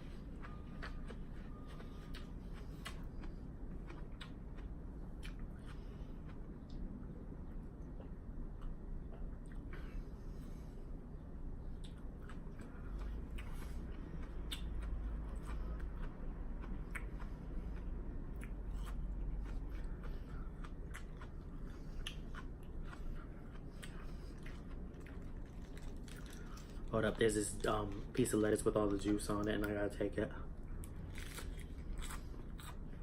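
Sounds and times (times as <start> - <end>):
low steady hum: 0.0 - 33.0
lettuce crunching while chewing: 11.8 - 29.8, 30.6 - 33.0.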